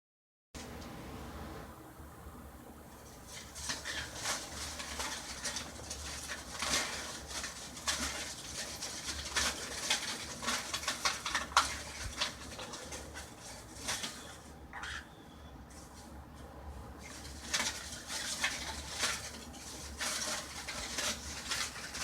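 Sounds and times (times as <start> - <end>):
foam cups clattering: 3.0 - 15.1, 17.0 - 22.0.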